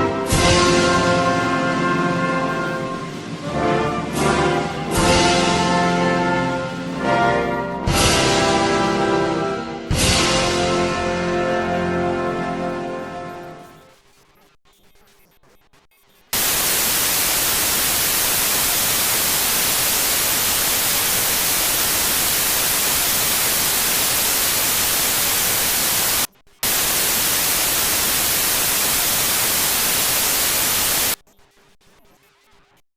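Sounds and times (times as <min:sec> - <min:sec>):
loud static hiss: 0:00.0 - 0:09.0, 0:16.4 - 0:31.7.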